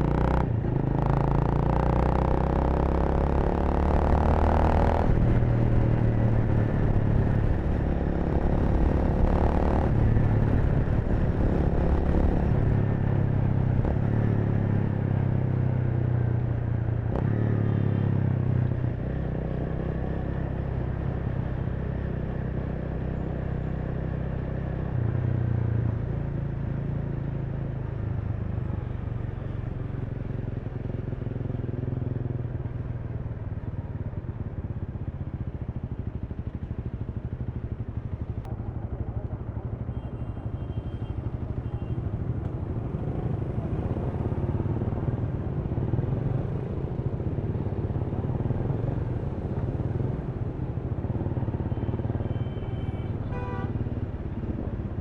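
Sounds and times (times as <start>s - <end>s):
motorcycle engine running: 30.0s - 55.0s.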